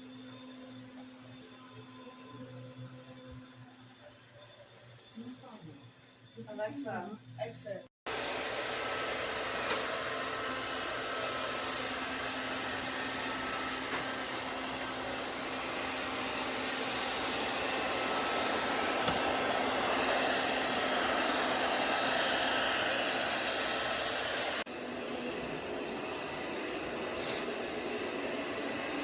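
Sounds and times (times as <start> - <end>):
robot vacuum cleaner whirring: 8.1 - 29.0.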